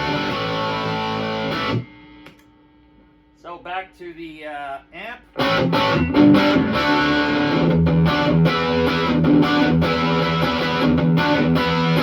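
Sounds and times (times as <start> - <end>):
overdriven electric guitar chords: 0.0 - 2.5, 5.3 - 12.0.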